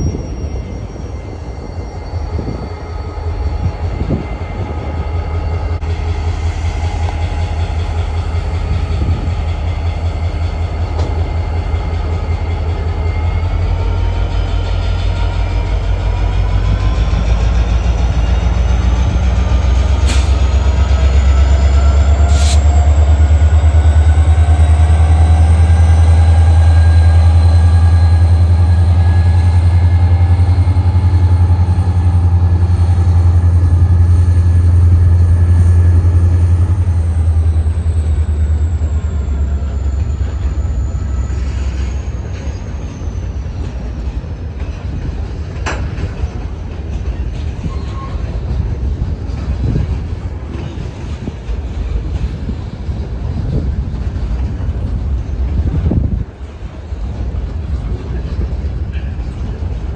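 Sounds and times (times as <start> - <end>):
wheel squeal: 0.0 - 44.4, 45.6 - 48.7
diesel locomotive rumble: 0.0 - 59.9.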